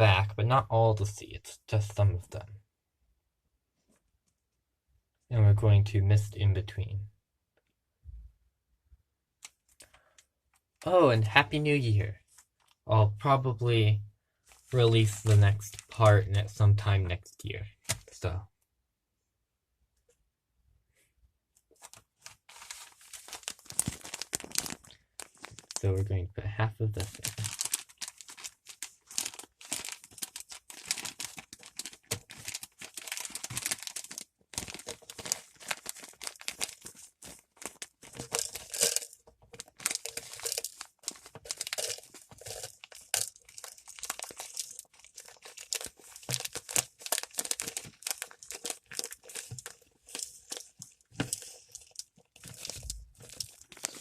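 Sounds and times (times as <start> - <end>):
plastic bag crinkling: 14.5 - 16.0, 21.7 - 25.9, 27.0 - 54.0.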